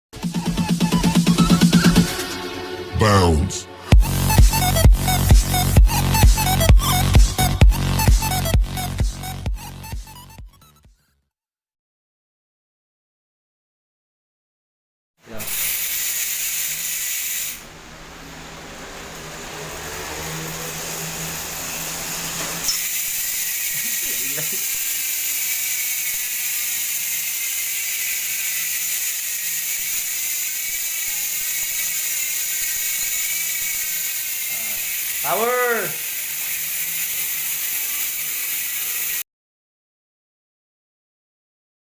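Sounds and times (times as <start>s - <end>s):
electronic dance music: 0.2s - 10.8s
bicycle freewheel ratchet buzzing: 3.9s - 10.8s, 15.3s - 39.3s.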